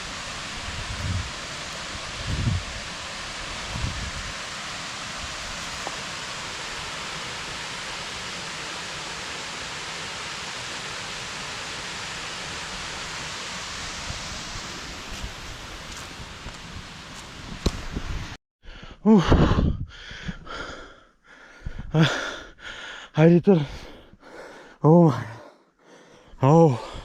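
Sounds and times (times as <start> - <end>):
waterfall rushing hiss: 0.0 - 18.3.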